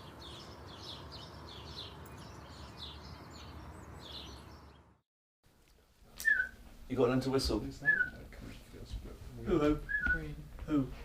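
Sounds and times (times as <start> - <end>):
small birds chirping: 0.0 - 5.0, 6.2 - 6.6, 7.8 - 8.3.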